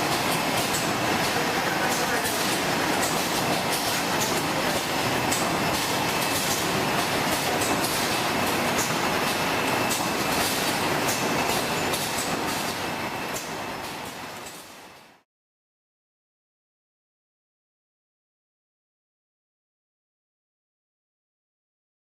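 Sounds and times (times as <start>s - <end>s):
printing machine clatter: 0.0s - 15.1s.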